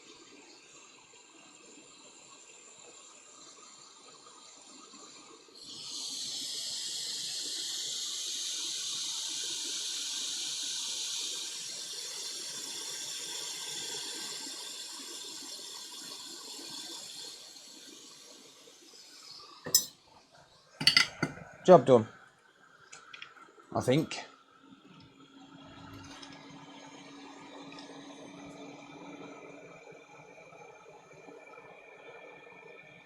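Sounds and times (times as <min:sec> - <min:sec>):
hot air blower hissing: 0:05.6 - 0:19.9, 0:20.8 - 0:21.3.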